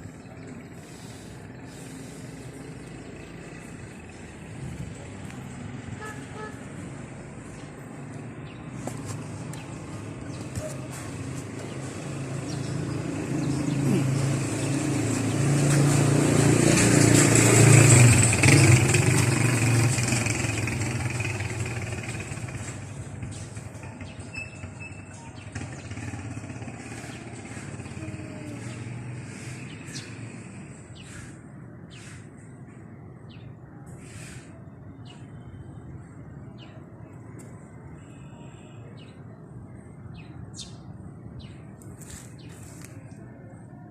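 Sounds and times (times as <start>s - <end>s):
birds chirping: 0.0s - 16.2s, 20.2s - 43.2s
motorcycle engine passing: 8.5s - 31.3s.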